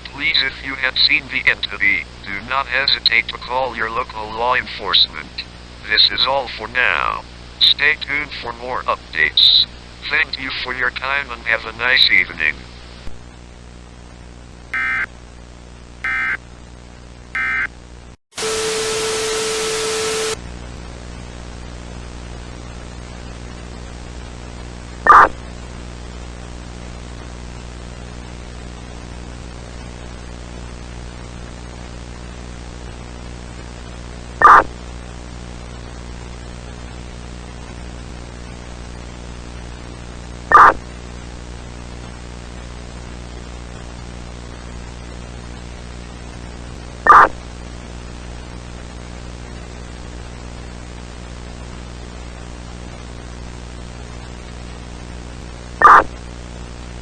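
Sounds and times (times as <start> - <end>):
mains hum: 0.0 - 57.0
loud static with steady tone: 11.0 - 15.1, 15.7 - 57.0
two-tone digital data bursts: 14.8 - 15.1, 16.1 - 16.4, 17.4 - 17.7, 55.8 - 56.1
loud short blip: 25.1 - 25.3, 47.1 - 47.3, 55.8 - 56.1.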